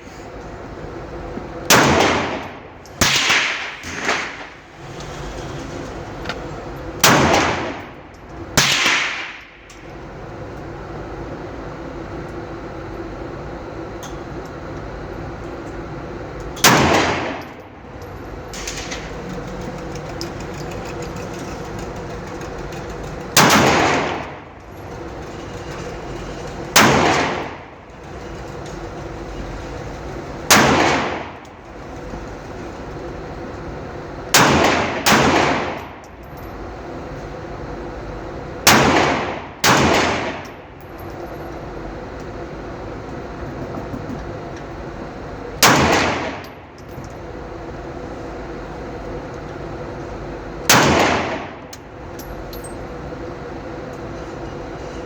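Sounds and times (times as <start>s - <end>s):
steady hum: 0.0s - 55.0s
pistol shots with echo: 50.7s - 51.6s.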